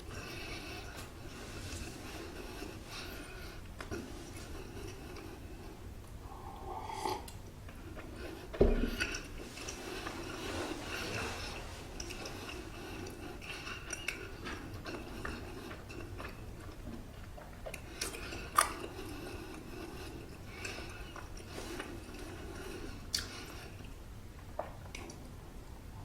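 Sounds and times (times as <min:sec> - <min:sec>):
person chewing soft bun: 0:00.0 - 0:25.2
wet mouth clicks: 0:23.1 - 0:23.4.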